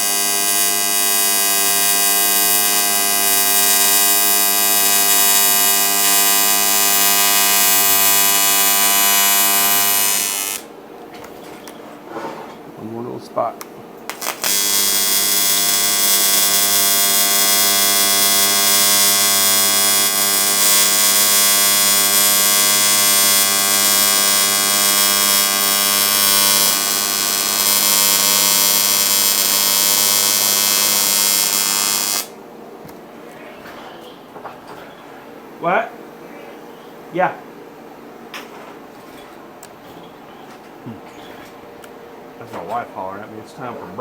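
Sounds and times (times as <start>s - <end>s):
welding arc buzzing: 0.0s - 10.8s, 13.6s - 32.4s.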